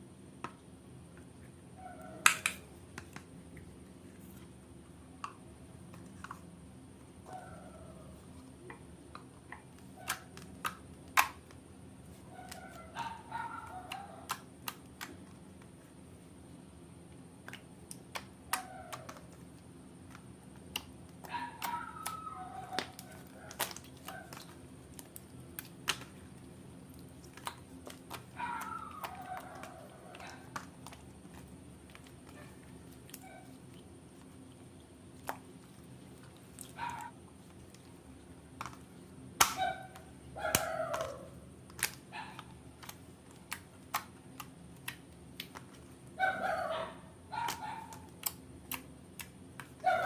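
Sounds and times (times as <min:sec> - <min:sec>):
slime squelching: 0:17.4 - 0:46.1.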